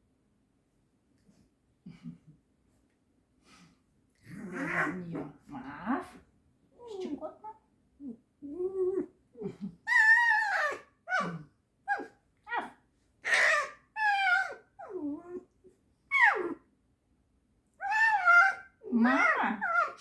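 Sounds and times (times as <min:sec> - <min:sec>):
fox squeaking and whining: 0:09.9 - 0:11.3, 0:13.2 - 0:15.4, 0:16.1 - 0:16.6, 0:17.8 - 0:20.0.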